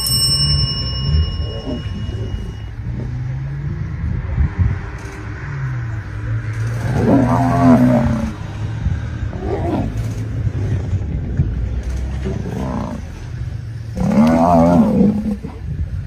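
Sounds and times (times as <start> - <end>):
drawn-out animal calls: 1.2 - 3.3, 6.8 - 8.4, 12.2 - 13.3, 14.0 - 15.7.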